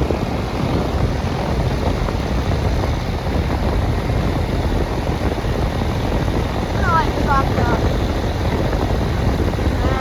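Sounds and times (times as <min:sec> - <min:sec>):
air conditioner unit whooshing: 0:00.0 - 0:10.0.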